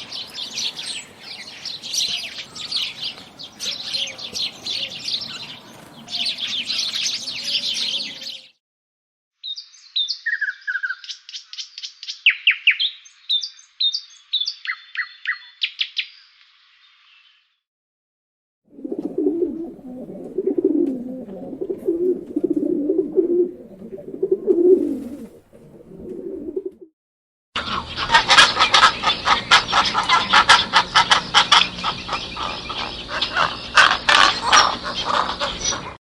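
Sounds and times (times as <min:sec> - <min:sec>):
pigeon cooing: 0:00.5 - 0:08.5, 0:18.7 - 0:26.9, 0:27.7 - 0:36.0.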